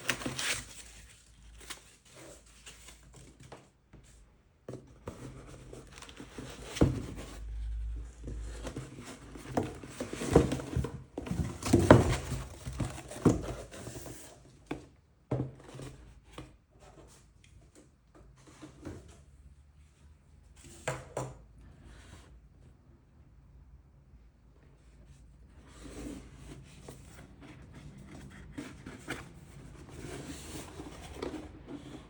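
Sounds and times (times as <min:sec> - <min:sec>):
cardboard and wrapping crinkling: 0:00.0 - 0:03.7, 0:05.2 - 0:14.4.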